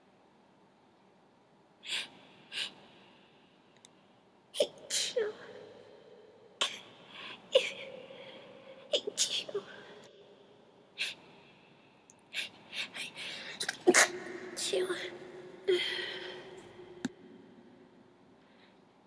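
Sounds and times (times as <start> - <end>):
girl sneezing: 13.6 - 15.1.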